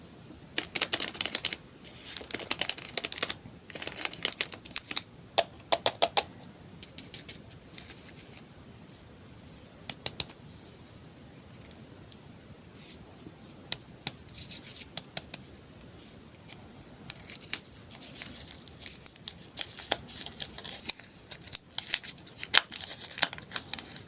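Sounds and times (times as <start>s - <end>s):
plastic wrappers crackling: 0.6s - 5.0s, 17.1s - 24.0s.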